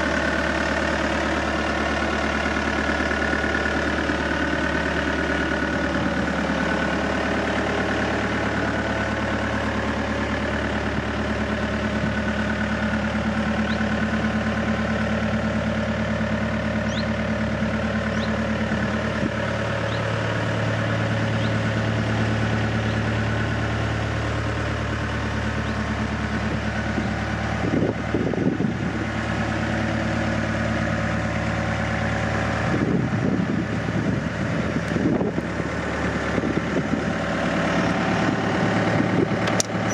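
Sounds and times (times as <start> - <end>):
diesel engine idling: 0.0 - 39.9
wind buffeting microphone: 32.7 - 35.5.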